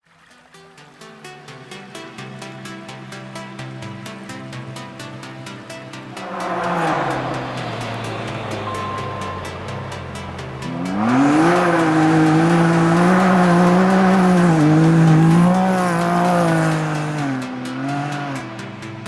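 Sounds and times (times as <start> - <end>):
engine revving under acceleration: 6.2 - 18.6.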